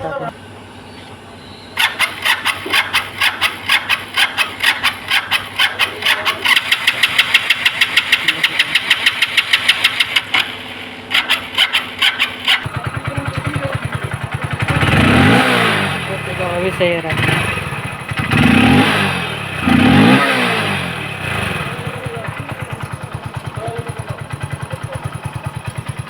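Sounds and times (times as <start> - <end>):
motorcycle engine cranking and revving: 1.8 - 26.0.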